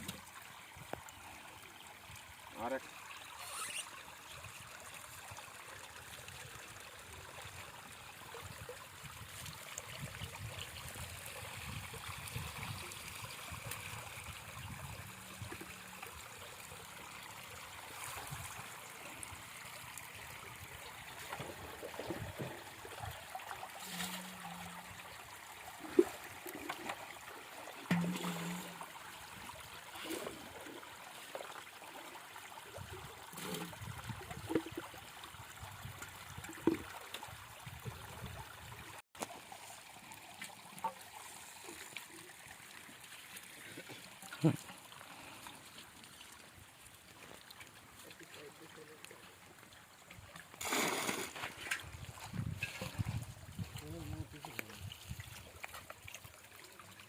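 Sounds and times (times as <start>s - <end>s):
water trickling and splashing: 0.0s - 57.0s.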